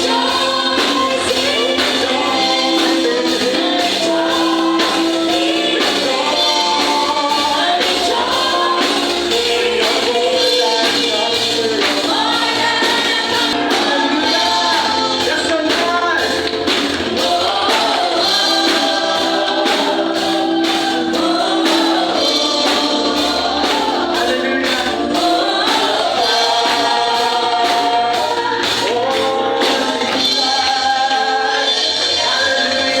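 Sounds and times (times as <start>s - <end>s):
band accompaniment: 0.0s - 33.0s
group singing worship song: 0.0s - 33.0s
steady percussion beat: 0.0s - 33.0s.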